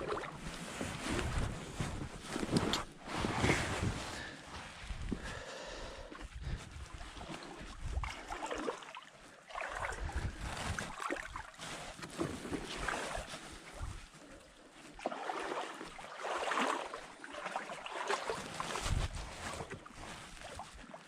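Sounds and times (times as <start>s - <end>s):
paddle splashing in water: 0.0s - 1.1s, 7.2s - 13.3s, 14.9s - 21.0s.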